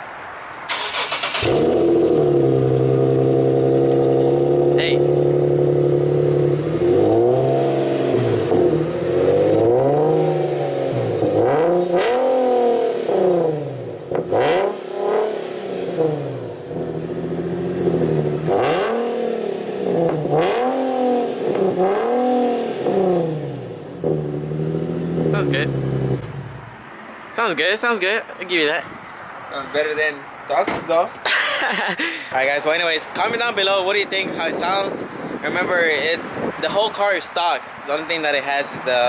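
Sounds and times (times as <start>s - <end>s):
car engine revving: 0.5s - 27.2s.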